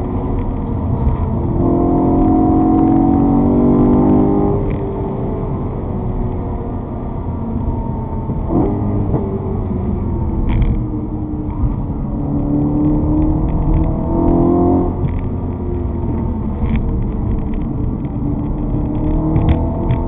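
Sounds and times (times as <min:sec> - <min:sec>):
low road rumble: 0:00.0 - 0:20.0
vehicle engine accelerating: 0:00.0 - 0:20.0.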